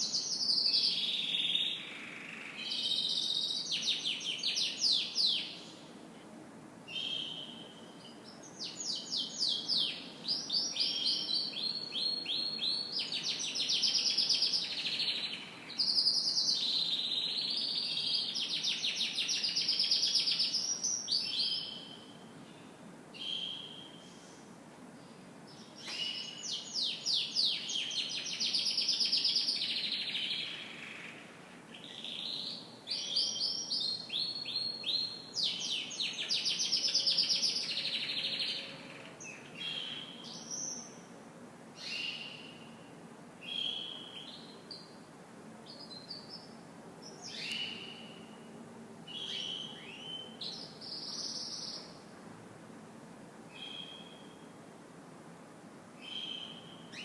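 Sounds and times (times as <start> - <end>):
canary singing trills: 47.1 - 48.5, 53.6 - 54.4, 56.0 - 57.0.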